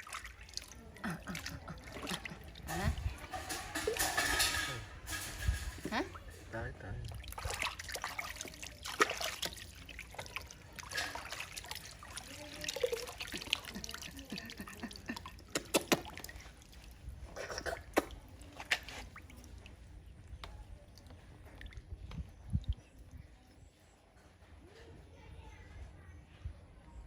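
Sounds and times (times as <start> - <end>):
sharp water splashes: 0.0 - 5.9, 7.0 - 19.8
water trickling: 0.0 - 23.2.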